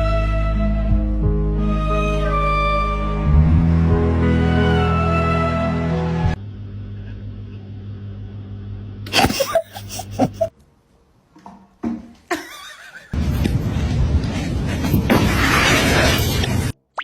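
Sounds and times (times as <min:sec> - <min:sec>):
cat sneezing: 0:09.1 - 0:10.5.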